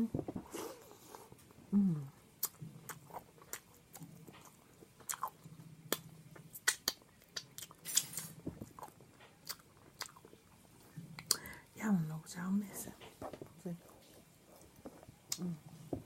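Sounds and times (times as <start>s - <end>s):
chewing with lip smacks: 2.4s - 8.0s, 8.6s - 11.4s
mouth clicks: 15.3s - 15.6s.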